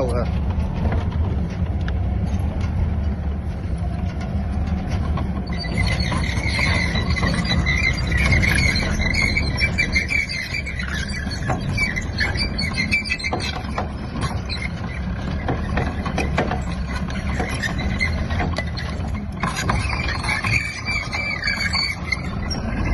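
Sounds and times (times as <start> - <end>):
low engine drone: 0.0 - 22.9
drill squealing and creaking: 4.8 - 22.9.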